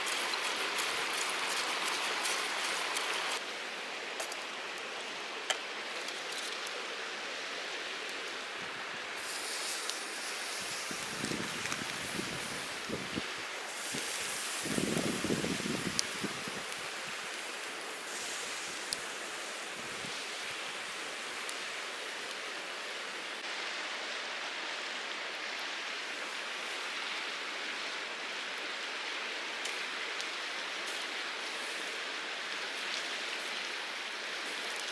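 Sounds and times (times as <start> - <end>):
mountain stream rushing: 0.0 - 3.5.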